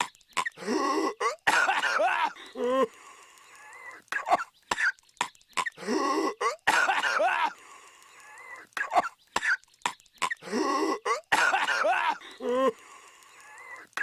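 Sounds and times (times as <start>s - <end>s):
cartoon character coughing: 8.8s - 9.6s, 10.2s - 12.2s.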